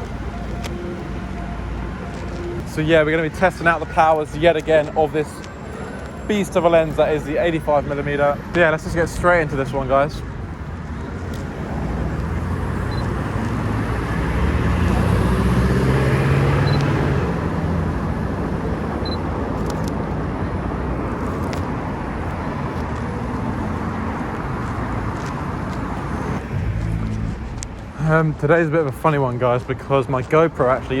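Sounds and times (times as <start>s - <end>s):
steady road noise: 0.0s - 31.0s
vehicle passing close by: 11.6s - 18.8s.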